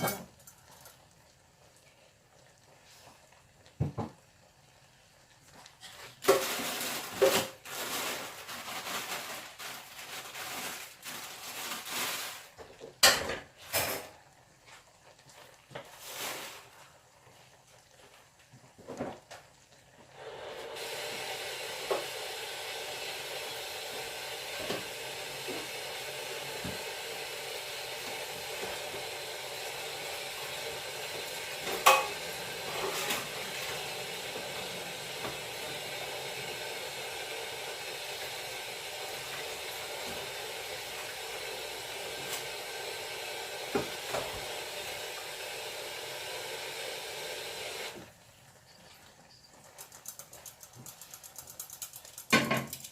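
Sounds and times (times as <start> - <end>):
food sizzling in a pan: 0.0 - 52.9
utensil clinking on cookware: 31.7 - 32.2.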